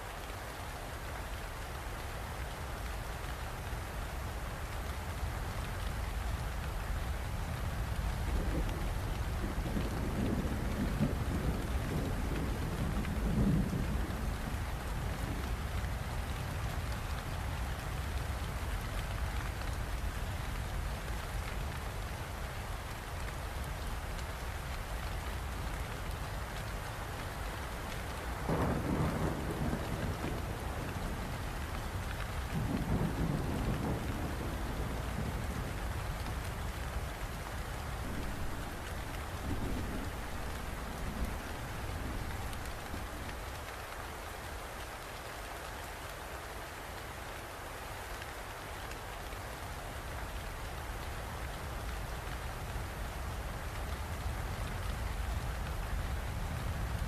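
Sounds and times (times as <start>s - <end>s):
steady rain falling: 0.0s - 57.0s
thunder rolling: 38.0s - 43.4s.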